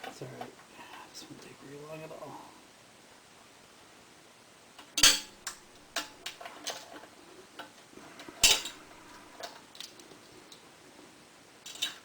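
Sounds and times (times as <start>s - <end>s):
metal tools clanking: 8.4s - 8.8s.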